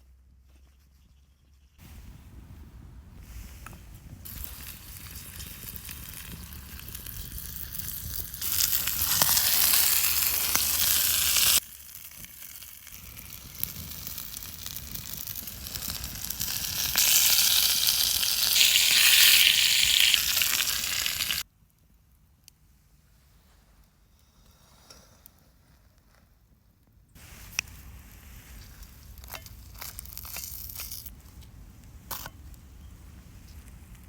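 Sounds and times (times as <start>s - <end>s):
chicken sizzling over fire: 3.3s - 21.5s, 27.2s - 31.1s.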